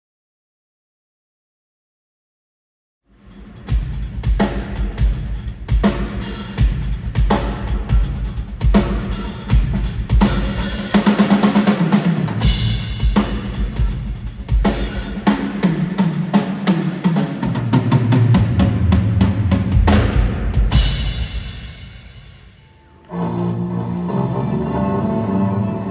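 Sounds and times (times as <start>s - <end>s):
drum kit beat: 3.2s - 22.5s.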